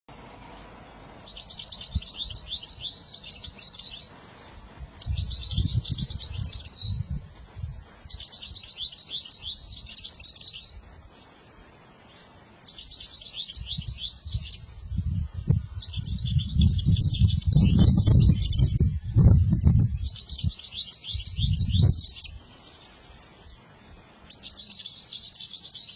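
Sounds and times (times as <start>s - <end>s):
songbird twittering: 0.1s - 25.9s
low rumbling noise: 4.2s - 8.1s, 14.6s - 20.5s.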